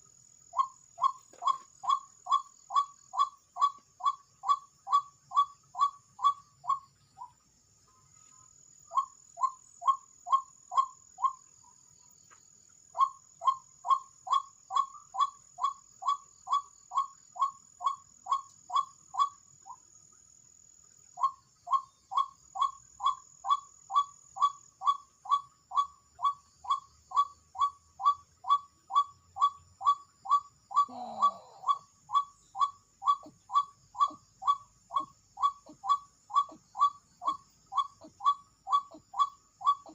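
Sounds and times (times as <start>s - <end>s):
waterhen calling: 21.2s - 39.9s.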